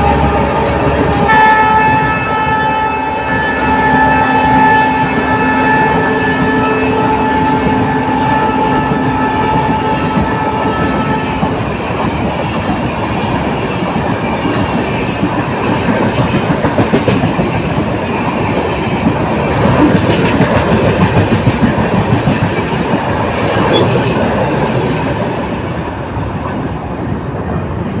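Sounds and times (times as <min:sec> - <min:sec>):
locomotive horn chord: 0:00.0 - 0:11.6
train rumbling past: 0:00.0 - 0:28.0.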